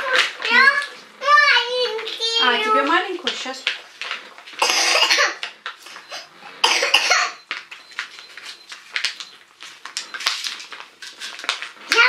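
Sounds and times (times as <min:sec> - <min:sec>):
child coughing: 0:04.6 - 0:05.4, 0:06.2 - 0:07.4.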